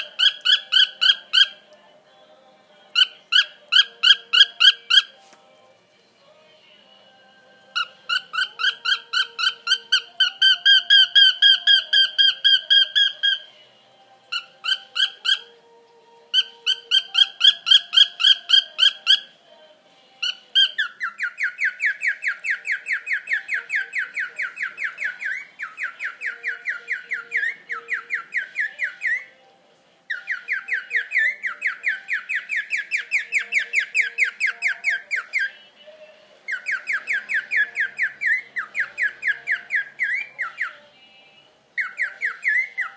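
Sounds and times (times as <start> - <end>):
cockatiel whistling: 0.0 - 1.6, 3.0 - 5.2, 7.8 - 13.5, 14.3 - 15.6, 16.3 - 19.3, 20.2 - 29.4, 30.1 - 35.5, 36.5 - 40.9, 41.8 - 42.9.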